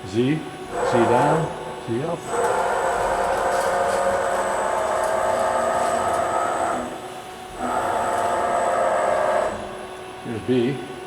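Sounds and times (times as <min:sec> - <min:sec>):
motor whine: 0:00.6 - 0:10.1.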